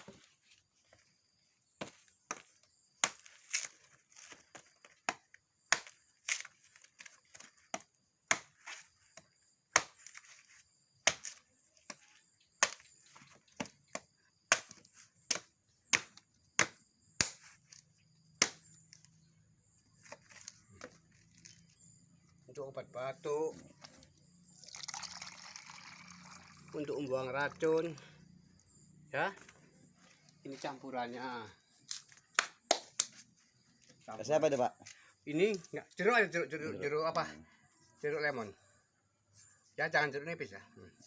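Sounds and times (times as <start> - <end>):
blade chopping coconut: 1.8 - 3.7, 4.3 - 6.5, 7.3 - 10.2, 11.0 - 12.8, 13.6 - 17.4, 18.4 - 18.6.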